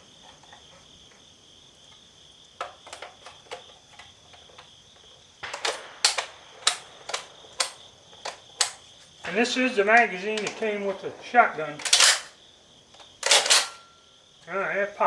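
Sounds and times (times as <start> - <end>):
crickets chirping: 0.0 - 15.0
shotgun shells clicking: 5.4 - 8.9, 9.9 - 13.8.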